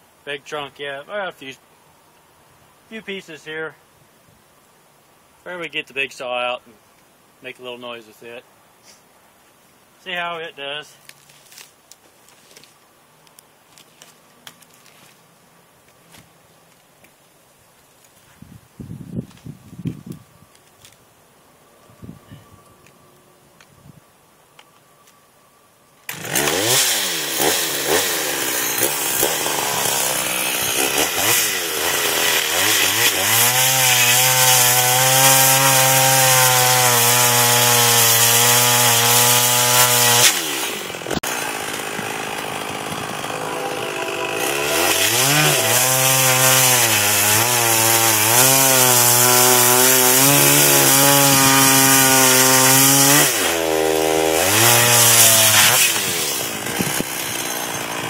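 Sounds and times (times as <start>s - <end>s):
chainsaw cutting wood: 26.1s - 58.0s.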